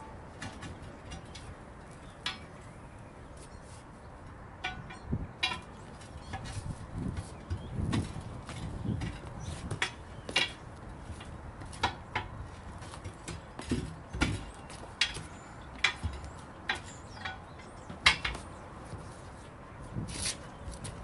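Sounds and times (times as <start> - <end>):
hand tools clanking on metal: 4.6 - 6.6, 11.2 - 18.6.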